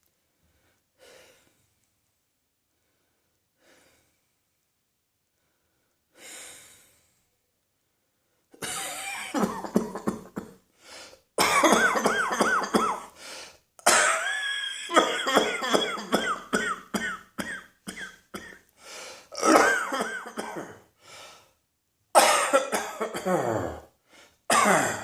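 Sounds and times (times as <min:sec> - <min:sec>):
person coughing: 0:08.6 - 0:10.6, 0:11.4 - 0:13.1, 0:13.8 - 0:18.6, 0:19.4 - 0:20.8, 0:22.2 - 0:23.9, 0:24.5 - 0:25.0.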